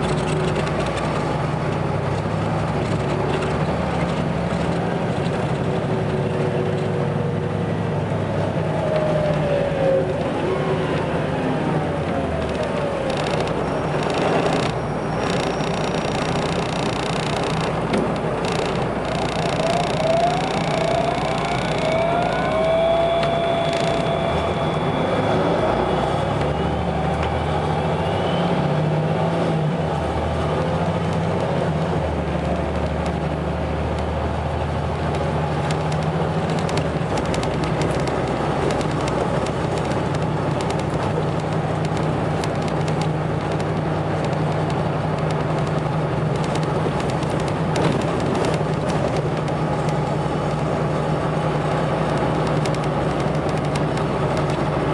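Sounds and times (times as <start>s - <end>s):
gearbox whine: 0.0s - 29.0s
bus diesel engine humming: 0.0s - 54.9s.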